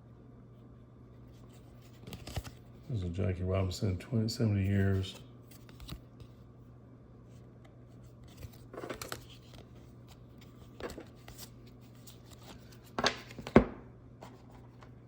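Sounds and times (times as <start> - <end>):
steady low hum: 0.0 - 15.0
trading cards shuffling: 1.4 - 2.6, 4.6 - 6.3, 8.2 - 13.6.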